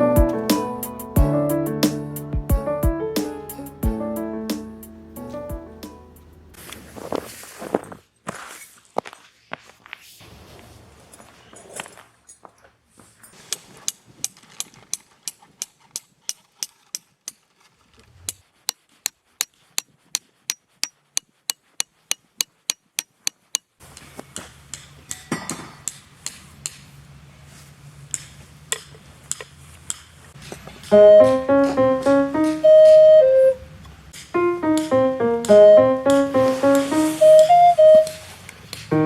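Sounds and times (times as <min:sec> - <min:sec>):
tent pegs being hammered: 0:13.5 - 0:17.6, 0:18.2 - 0:26.9, 0:28.1 - 0:33.1, 0:34.2 - 0:36.4.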